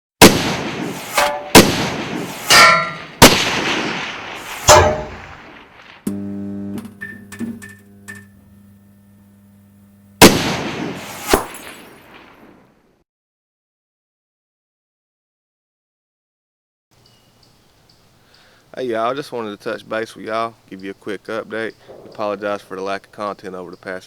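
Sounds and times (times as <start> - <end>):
steady low hum: 6.1 - 11.0.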